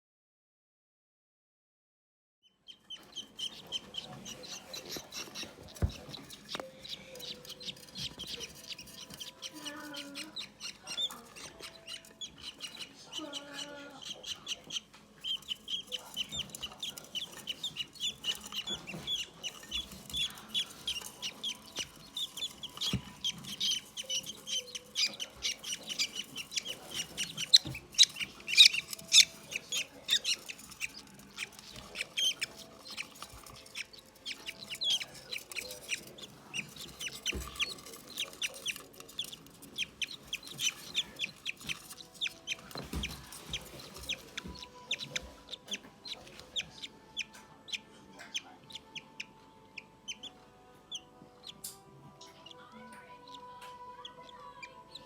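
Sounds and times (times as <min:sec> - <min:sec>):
bird chicks chirping rapidly: 0:02.4 - 0:55.0.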